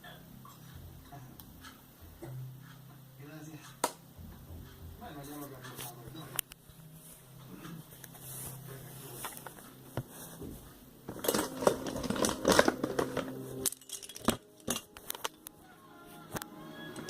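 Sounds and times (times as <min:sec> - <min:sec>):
small hard objects rattling: 0:11.1 - 0:15.4.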